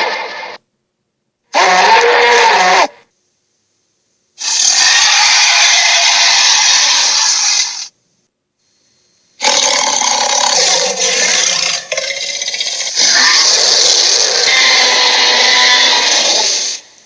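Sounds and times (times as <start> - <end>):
raspy dinosaur roar: 1.6 - 3.0, 4.4 - 7.4, 9.4 - 16.8.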